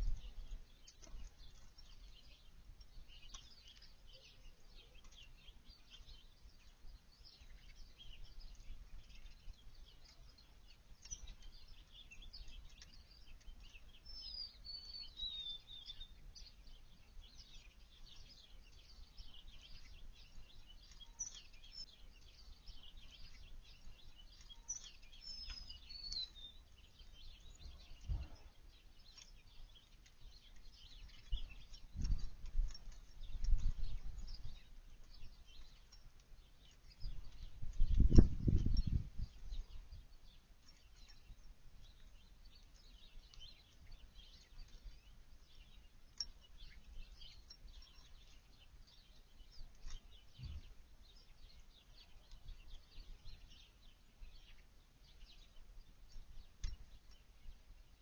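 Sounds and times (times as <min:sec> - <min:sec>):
songbirds chirping: 0:00.0 - 0:58.0
soft low thump: 0:28.0 - 0:28.5.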